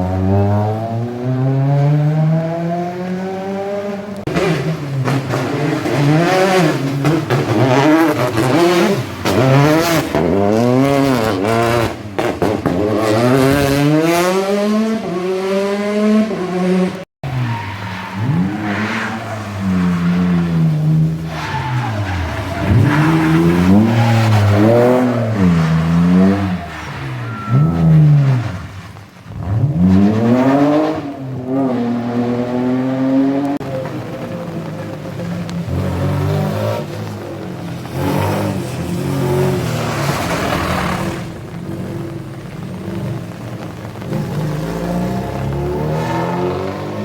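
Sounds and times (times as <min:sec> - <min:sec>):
tyre squeal: 0:17.3 - 0:29.0
car engine revving hard: 0:21.9 - 0:28.6, 0:37.9 - 0:47.0.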